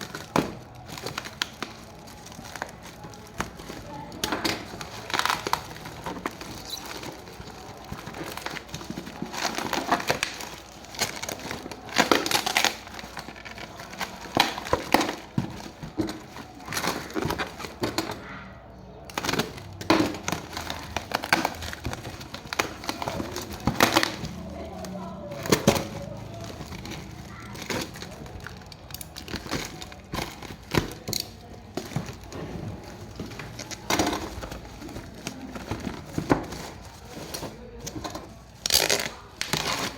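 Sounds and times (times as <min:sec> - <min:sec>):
plastic and cardboard crinkling: 0:00.0 - 0:39.9.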